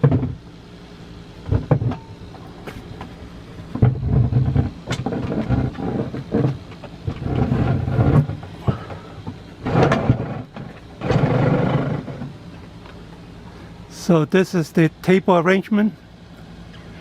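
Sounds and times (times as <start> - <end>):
wooden furniture knocking and scraping: 0.0 - 0.4, 1.4 - 3.1, 3.7 - 12.4.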